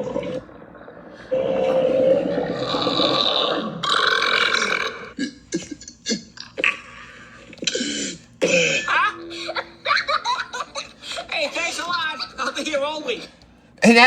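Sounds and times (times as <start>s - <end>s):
long loud burp: 0.0s - 5.3s.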